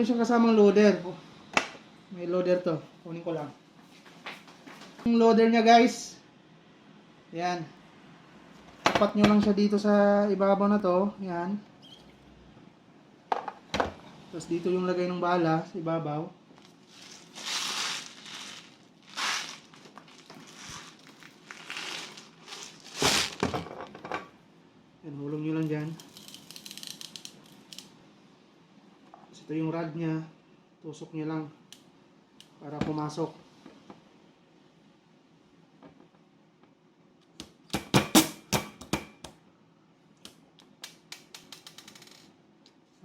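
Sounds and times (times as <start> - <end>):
plastic pellets poured rattling: 16.9 - 23.4.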